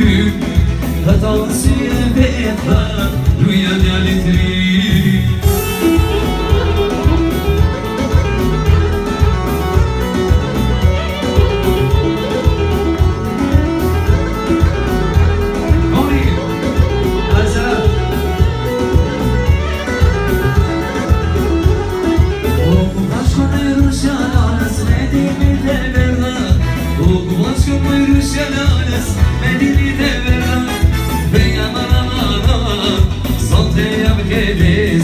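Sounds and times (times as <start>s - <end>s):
bass: 0.0s - 35.0s
live band playing: 0.0s - 35.0s
melodic lead line: 0.0s - 35.0s
steady driving beat: 0.0s - 35.0s.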